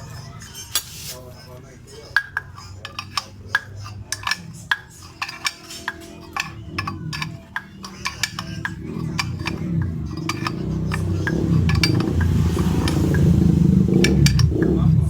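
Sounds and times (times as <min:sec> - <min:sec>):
metallic tool clicks and clinks: 0:02.2 - 0:09.6
low hum: 0:06.5 - 0:15.0.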